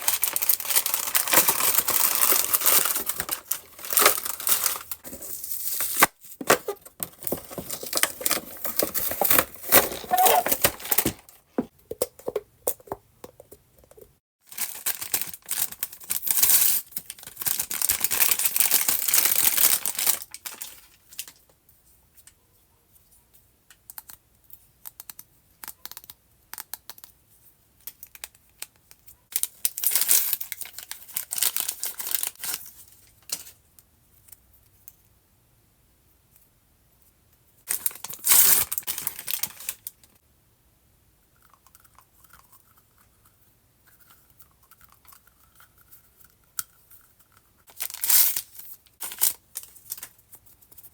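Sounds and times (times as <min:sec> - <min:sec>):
packaging tearing and crinkling: 0:00.0 - 0:11.4, 0:14.5 - 0:20.9, 0:29.4 - 0:32.7, 0:37.7 - 0:39.9, 0:47.7 - 0:50.1.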